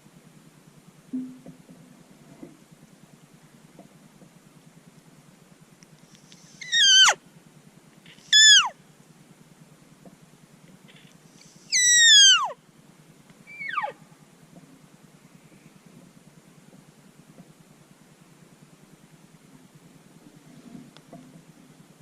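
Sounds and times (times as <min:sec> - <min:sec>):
elk mew calls: 0:06.6 - 0:07.2, 0:08.3 - 0:08.7, 0:11.7 - 0:12.6, 0:13.5 - 0:14.0.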